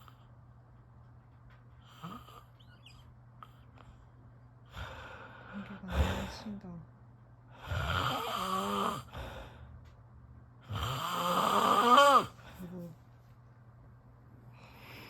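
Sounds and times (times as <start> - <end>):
person snoring: 7.6 - 9.4, 10.7 - 12.4.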